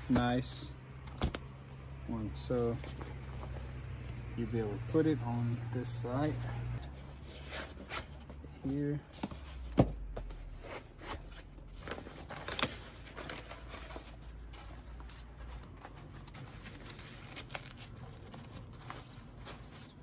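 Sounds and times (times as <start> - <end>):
pouch rustling: 9.5 - 20.0.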